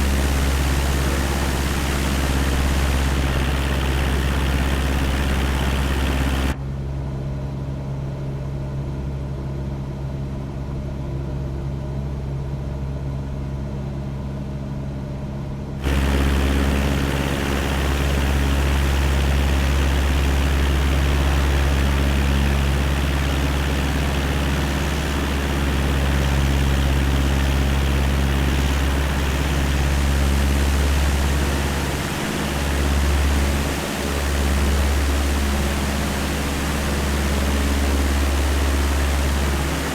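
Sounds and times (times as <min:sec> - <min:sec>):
airplane engine and propeller hum: 0:00.0 - 0:06.6, 0:15.8 - 0:39.9.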